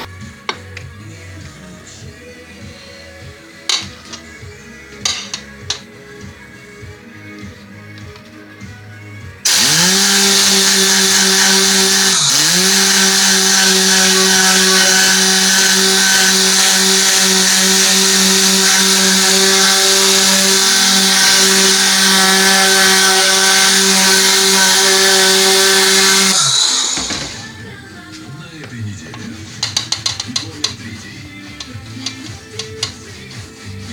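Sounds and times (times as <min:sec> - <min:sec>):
electric motor humming: 0:09.5 - 0:28.0.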